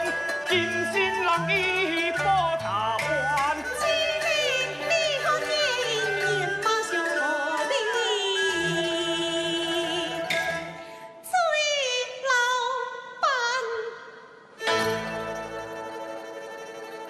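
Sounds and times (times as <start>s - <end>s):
traditional instrumental accompaniment: 0.0s - 11.2s, 14.6s - 17.0s
opera singing: 0.0s - 14.2s.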